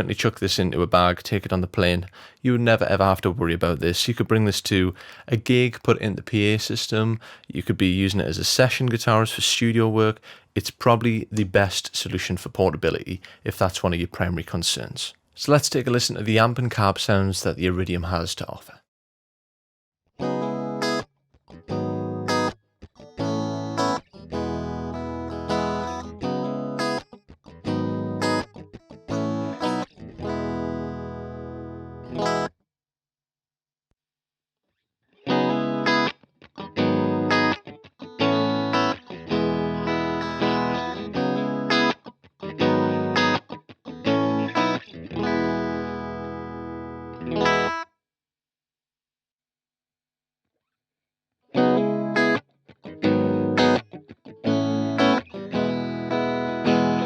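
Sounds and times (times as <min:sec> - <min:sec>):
electric guitar chords: 0:20.2 - 0:32.5, 0:35.2 - 0:47.8, 0:51.6 - 0:57.0.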